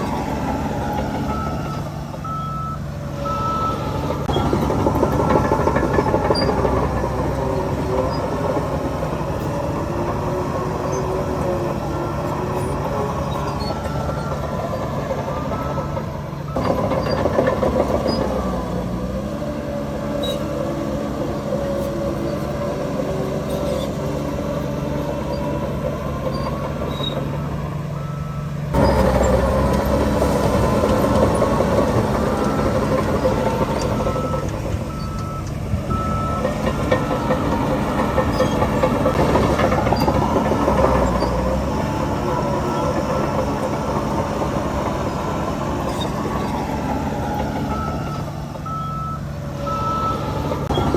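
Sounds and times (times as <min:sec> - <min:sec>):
diesel engines revving under load: 0:00.0 - 0:50.9
reversing alarm beeping: 0:00.6 - 0:08.3, 0:11.9 - 0:18.9, 0:25.2 - 0:50.9.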